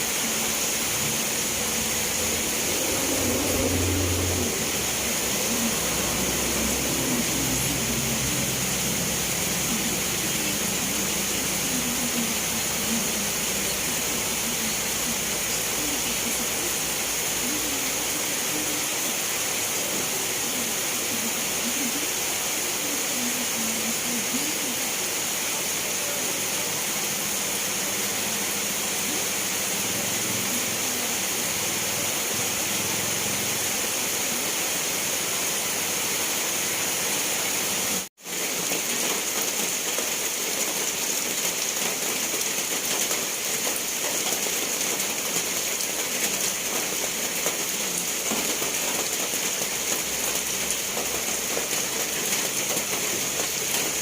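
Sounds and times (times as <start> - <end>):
steady rainfall: 0.0 - 54.0.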